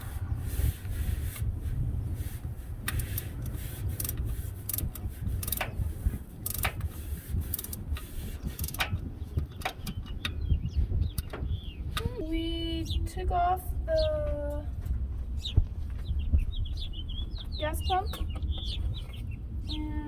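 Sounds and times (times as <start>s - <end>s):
steady low rumble: 0.0s - 20.0s
hand tools clicking on bolts: 2.8s - 5.8s, 6.4s - 10.4s.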